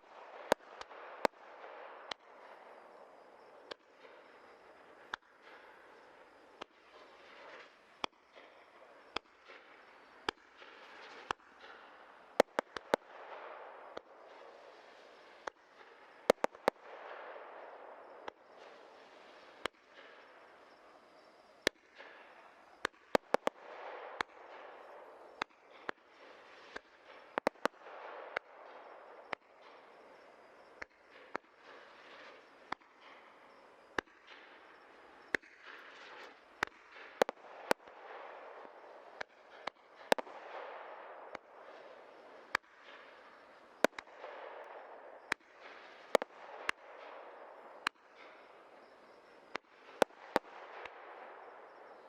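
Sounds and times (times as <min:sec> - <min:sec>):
firework pops: 0:15.4 - 0:17.0, 0:21.6 - 0:29.9, 0:34.0 - 0:41.5, 0:42.4 - 0:47.2.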